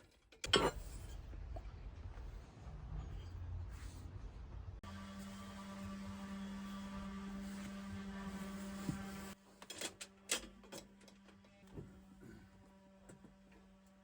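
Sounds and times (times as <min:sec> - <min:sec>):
power cutting tool running: 0:04.8 - 0:09.4.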